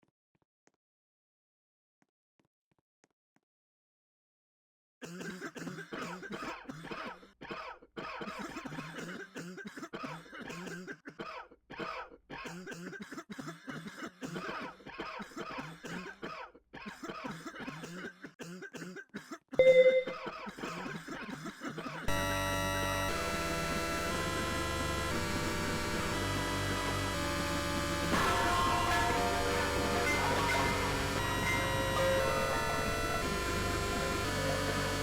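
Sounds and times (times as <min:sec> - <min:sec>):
person coughing: 0:05.0 - 0:22.1
brief loud tone: 0:19.6 - 0:20.2, 0:28.1 - 0:33.9.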